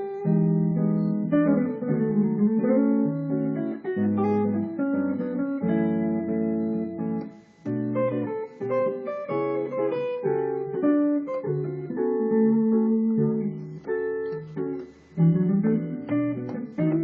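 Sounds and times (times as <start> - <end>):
clean electric guitar jazz: 0.0 - 17.0.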